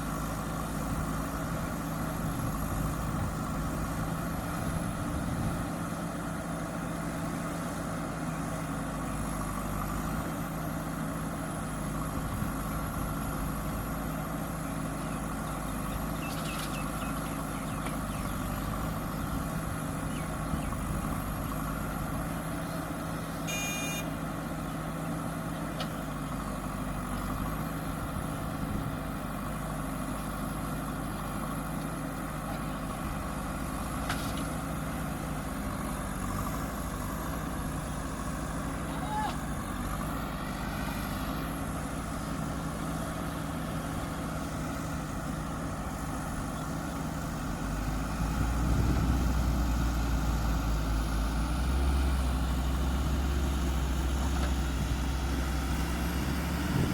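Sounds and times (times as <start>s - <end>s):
diesel engine running: 0.0s - 56.9s
high-pitched ringing tone: 23.5s - 24.1s.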